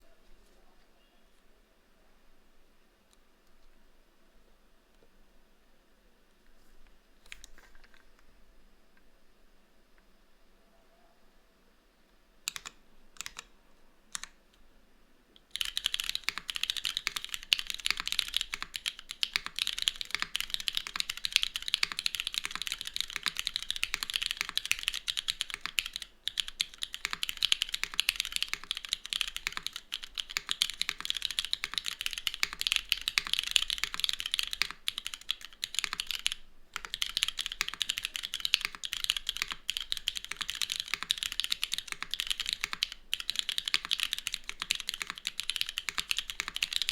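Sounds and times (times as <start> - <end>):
rapid mechanical keyboard typing: 12.5 - 13.5, 15.5 - 46.9.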